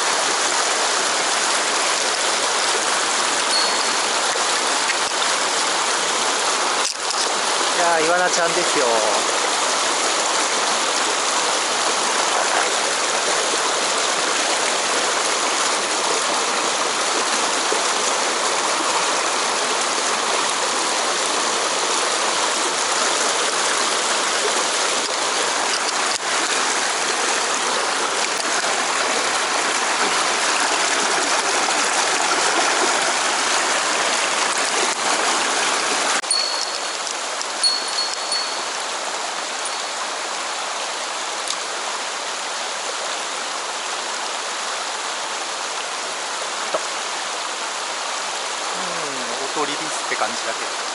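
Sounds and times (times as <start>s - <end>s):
stream water rushing: 0.0s - 50.9s
high ringing tones: 3.5s - 4.4s, 36.2s - 38.9s, 39.6s - 40.1s.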